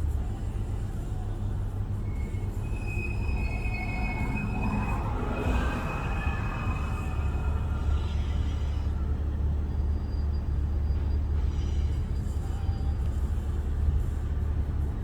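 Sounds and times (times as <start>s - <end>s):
jet engines roaring at takeoff: 3.1s - 9.1s.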